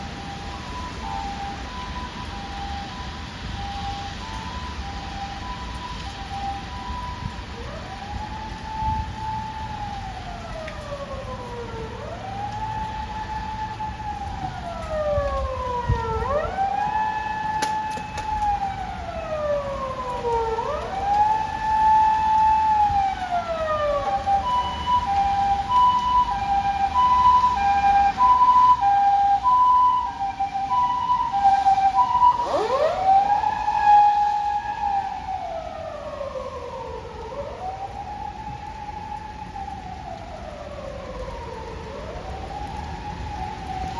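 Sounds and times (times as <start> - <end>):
ambulance siren wailing: 0.0 - 43.9
two-note hi-lo siren: 0.0 - 43.9.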